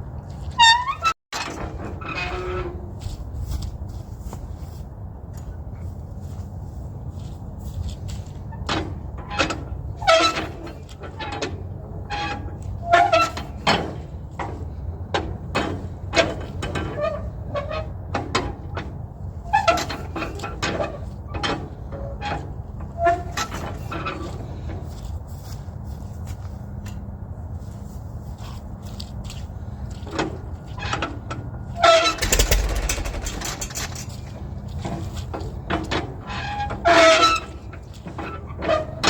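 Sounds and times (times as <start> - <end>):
metallic clanks and squeaks: 0.3 - 3.1, 8.5 - 25.1, 30.0 - 39.0
low hum: 32.1 - 34.4.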